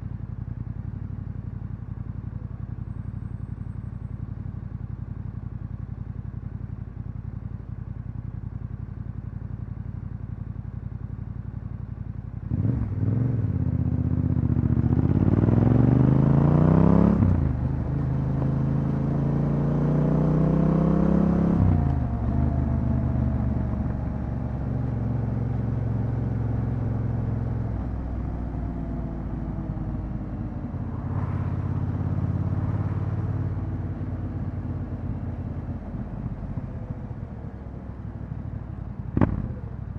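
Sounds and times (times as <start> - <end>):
motorcycle engine revving: 12.4 - 37.6, 38.2 - 39.9.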